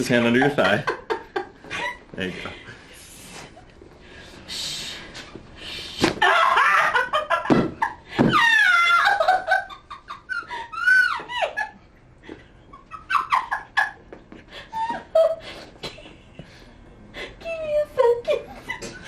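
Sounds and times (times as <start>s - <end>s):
woman laughing and squealing: 6.2s - 11.8s, 14.7s - 15.4s.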